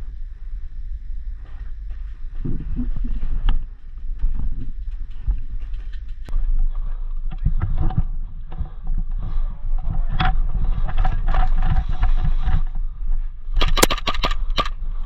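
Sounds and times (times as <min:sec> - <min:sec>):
camera handling rumble: 0:04.2 - 0:12.8, 0:13.6 - 0:14.8
airsoft shots cracking: 0:13.6 - 0:14.7.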